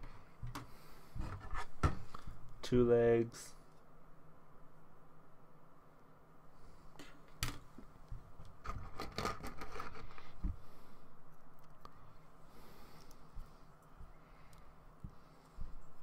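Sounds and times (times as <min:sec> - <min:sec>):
plastic parts clicking and rattling: 0:08.5 - 0:10.2.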